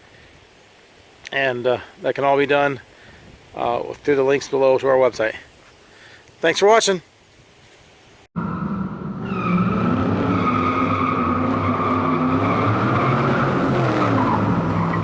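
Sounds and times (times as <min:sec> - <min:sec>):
car tyres squealing: 0:08.4 - 0:15.0.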